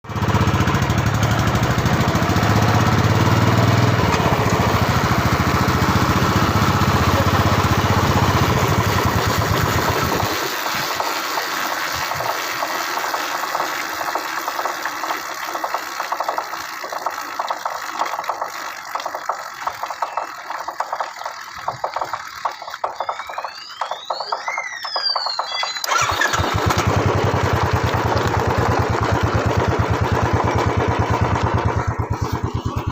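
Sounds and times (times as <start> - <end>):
motorcycle engine thumping: 0.5 - 10.2, 27.5 - 32.9
irregular ticking or rubbing: 6.6 - 25.7
high squeals: 22.2 - 26.8.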